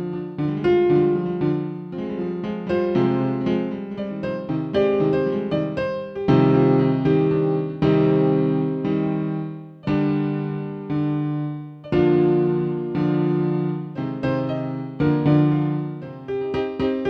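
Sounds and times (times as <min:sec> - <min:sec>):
slow piano chords: 0:00.0 - 0:17.0.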